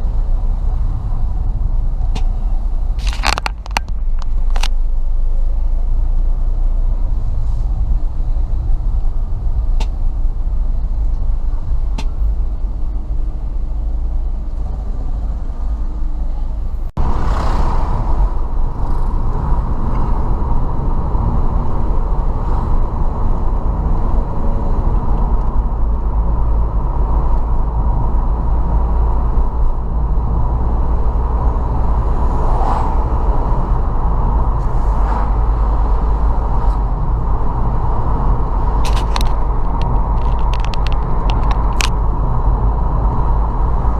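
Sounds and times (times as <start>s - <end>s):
car engine and road noise: 0.0s - 43.9s.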